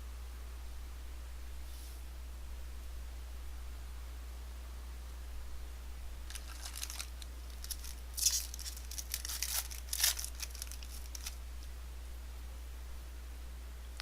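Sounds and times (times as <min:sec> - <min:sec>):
wrapper tearing and crinkling: 0:06.3 - 0:11.7.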